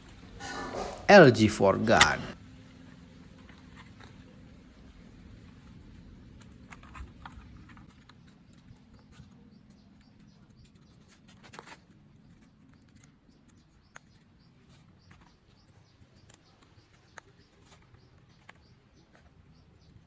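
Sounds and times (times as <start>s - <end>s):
low room hum: 0.0s - 20.0s.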